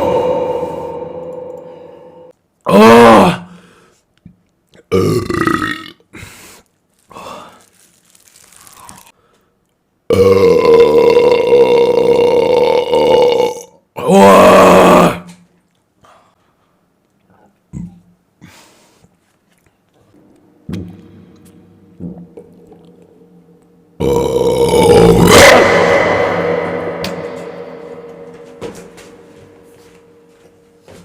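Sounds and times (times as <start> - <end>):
person burping: 0.0 - 3.5, 4.8 - 6.2, 10.1 - 15.3, 22.0 - 23.4, 24.0 - 29.2.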